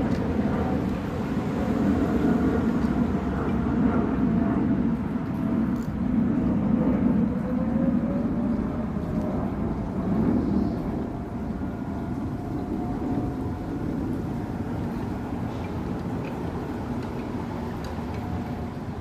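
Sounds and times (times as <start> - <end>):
steady low rumble: 0.0 - 19.0
distant warning siren wailing: 7.3 - 19.0.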